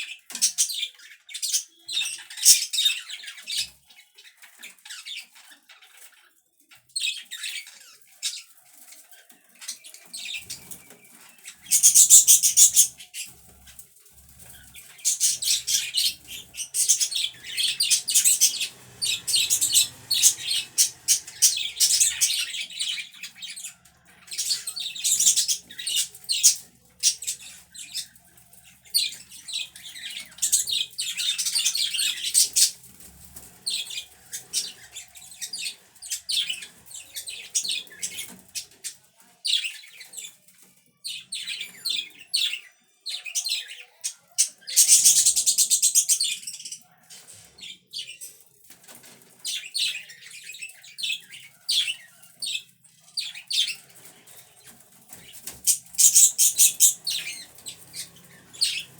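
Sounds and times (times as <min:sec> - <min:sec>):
budgerigars chirping and warbling: 0:00.0 - 0:58.9.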